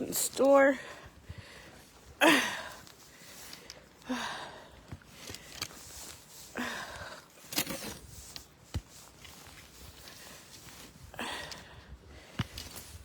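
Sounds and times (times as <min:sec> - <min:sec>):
shovel scraping snow: 0:07.4 - 0:10.9.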